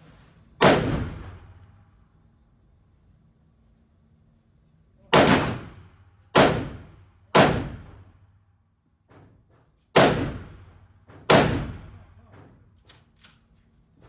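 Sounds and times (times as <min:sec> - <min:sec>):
pistol shots cracking indoors: 0:00.6 - 0:01.7, 0:05.1 - 0:08.1, 0:09.9 - 0:12.2.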